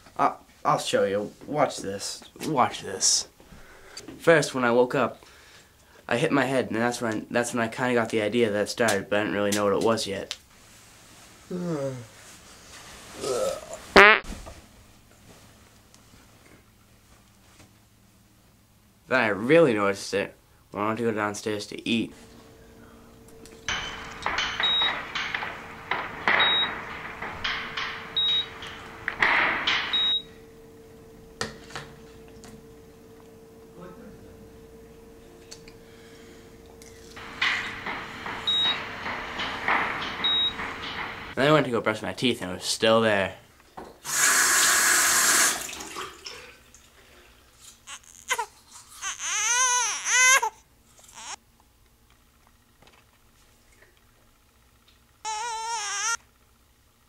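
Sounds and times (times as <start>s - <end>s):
noisy clattering bursts: 22.1s - 33.3s, 36.0s - 41.5s
infant crying: 47.8s - 51.4s, 55.2s - 56.2s.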